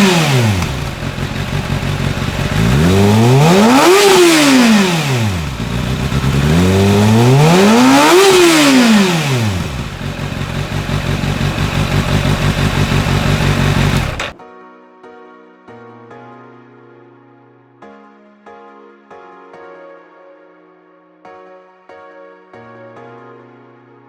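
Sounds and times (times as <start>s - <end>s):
motorcycle engine idling: 0.0s - 14.4s
motorcycle engine revving: 0.0s - 14.4s.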